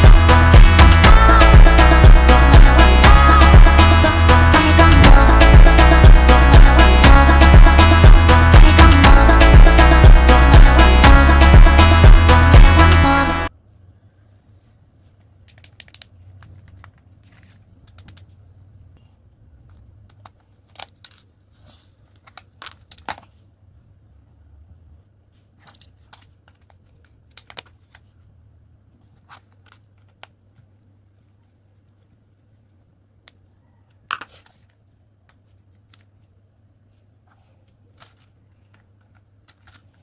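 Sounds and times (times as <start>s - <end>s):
small objects clicking and rustling: 15.2s - 18.4s, 19.6s - 23.4s, 37.9s - 40.0s.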